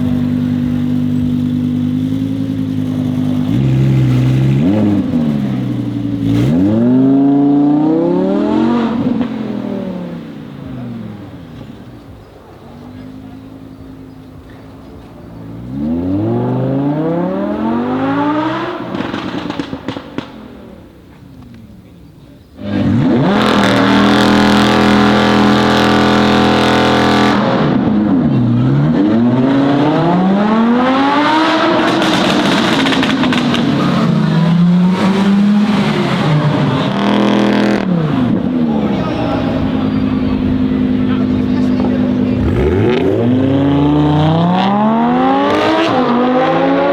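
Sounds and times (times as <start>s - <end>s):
car engine revving: 0.0s - 46.9s
exhaust crackles and pops: 18.8s - 22.0s.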